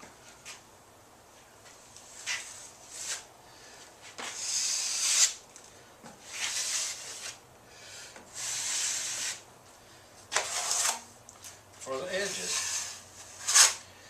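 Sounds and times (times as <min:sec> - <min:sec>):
taping knife scraping joint compound: 0:02.0 - 0:03.3, 0:04.1 - 0:05.4, 0:06.2 - 0:07.4, 0:08.2 - 0:09.4, 0:10.3 - 0:11.1, 0:11.9 - 0:13.8.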